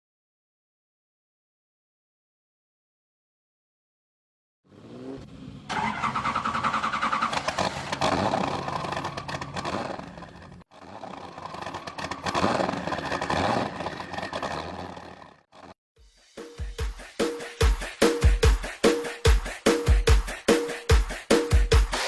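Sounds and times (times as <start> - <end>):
motor revving: 4.7 - 15.7.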